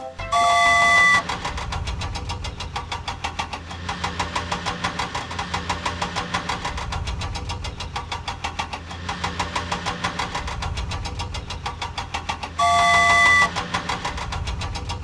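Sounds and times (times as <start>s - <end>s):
vehicle engine idling: 0.1s - 15.0s.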